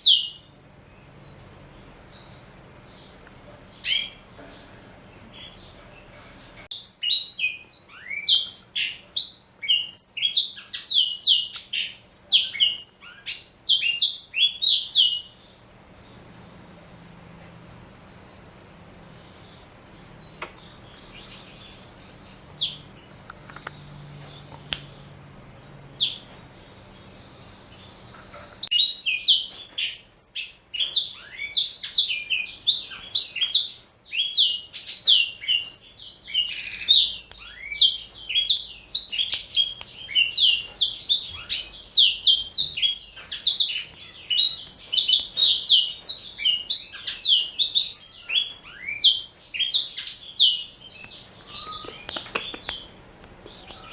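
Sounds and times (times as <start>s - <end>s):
canary singing: 0.0s - 53.9s
faint hiss: 20.4s - 22.7s, 23.4s - 24.9s, 26.5s - 28.0s.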